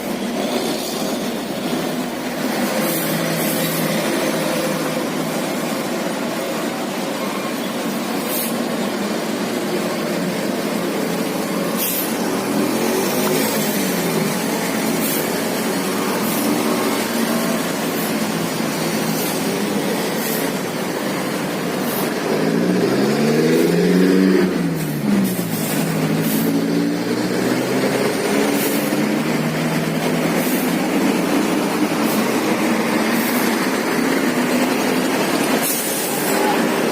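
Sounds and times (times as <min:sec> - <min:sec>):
bus diesel engine revving: 0:00.0 - 0:36.9
brief high hisses: 0:08.2 - 0:08.6.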